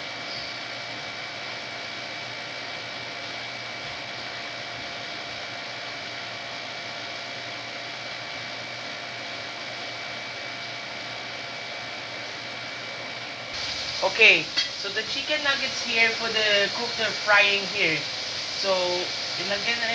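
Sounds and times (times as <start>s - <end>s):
faint constant whine: 0.0s - 19.9s
food sizzling in hot oil: 13.5s - 19.9s.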